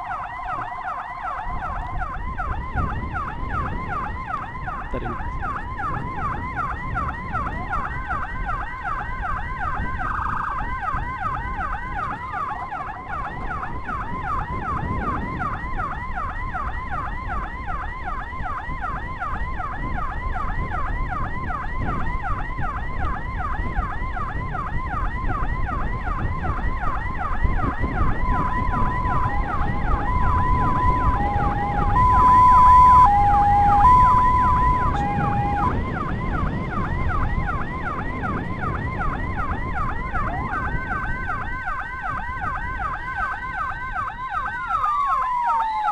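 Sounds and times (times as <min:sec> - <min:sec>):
electronic siren yelping: 0:00.0 - 0:45.9
two-tone hi-lo siren: 0:00.0 - 0:45.9
road noise: 0:26.8 - 0:45.9.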